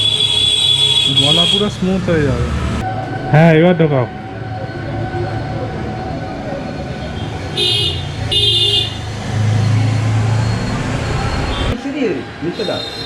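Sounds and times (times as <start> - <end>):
vehicle horn toots: 0.0 - 1.9, 7.1 - 9.2, 12.5 - 13.0
road traffic rumble: 0.0 - 13.0.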